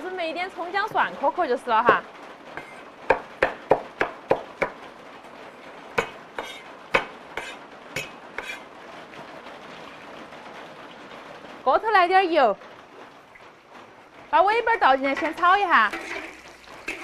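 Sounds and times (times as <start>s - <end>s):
knife chopping on cutting board: 6.0s - 8.6s.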